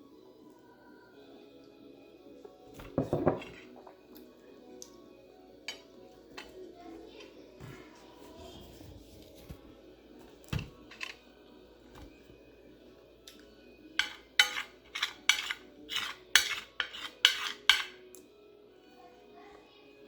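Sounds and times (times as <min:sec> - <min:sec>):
cutlery scraping a dish: 0:02.8 - 0:03.7, 0:05.7 - 0:06.6, 0:10.8 - 0:11.2, 0:14.0 - 0:18.2.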